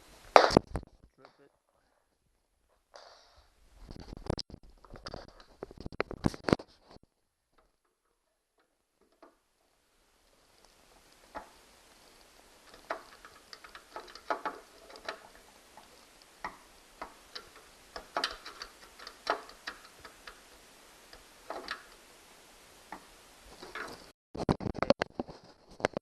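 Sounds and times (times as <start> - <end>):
screwdriver clicking and scraping: 12.6 - 20.5, 21.1 - 22.0.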